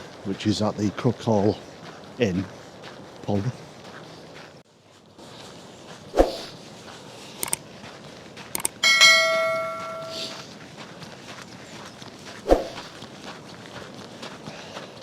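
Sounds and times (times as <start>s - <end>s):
light clicks: 7.4s - 7.6s, 8.6s - 8.8s
small metal bell ringing: 8.8s - 10.4s.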